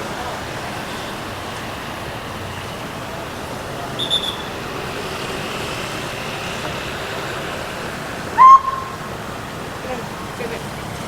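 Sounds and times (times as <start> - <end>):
street traffic noise: 0.0 - 11.0
high whistle: 4.0 - 4.5, 8.4 - 9.1.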